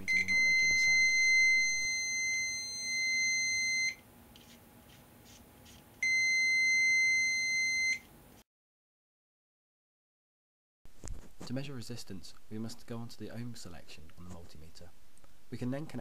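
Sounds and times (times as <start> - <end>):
multimeter continuity beep: 0.0 - 4.0, 6.0 - 8.1.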